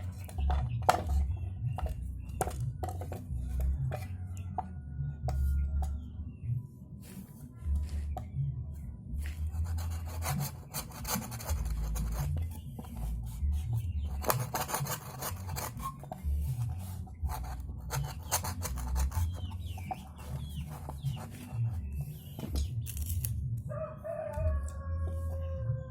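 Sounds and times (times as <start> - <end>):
hand tool scraping bamboo: 0.0 - 4.3, 9.2 - 23.3
rooster crowing: 23.7 - 25.9.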